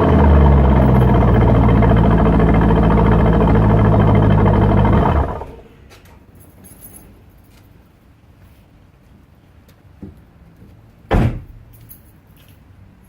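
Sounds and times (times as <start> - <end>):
car engine idling: 0.0 - 5.7.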